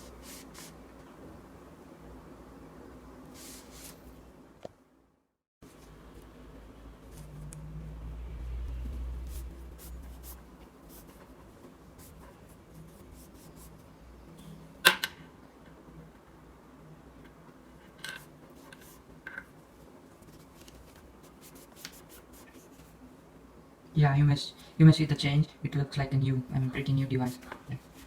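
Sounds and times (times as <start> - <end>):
cloth rubbing on cable: 0.0 - 0.8, 3.4 - 4.2, 8.6 - 13.8, 27.3 - 28.0
low rumble: 6.5 - 10.6.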